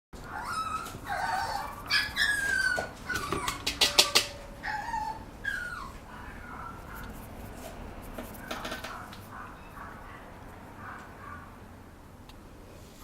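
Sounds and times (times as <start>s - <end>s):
puppy whimpering and yipping: 0.2s - 7.2s.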